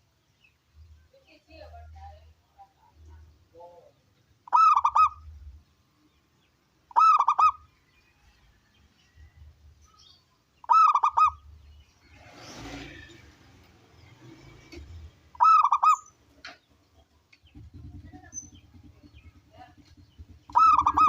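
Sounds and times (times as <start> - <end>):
dove cooing: 4.5 - 5.3, 6.9 - 7.7, 10.6 - 11.4, 15.4 - 16.1, 20.3 - 21.0.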